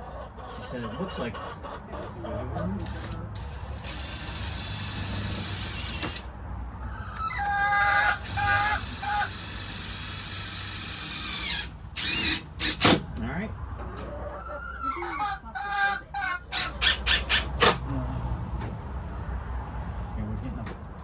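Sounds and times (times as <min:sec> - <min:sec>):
chicken clucking: 0:00.0 - 0:03.8, 0:06.8 - 0:09.3, 0:13.8 - 0:18.0
cordless drill driving screws: 0:02.8 - 0:06.3, 0:08.2 - 0:13.0.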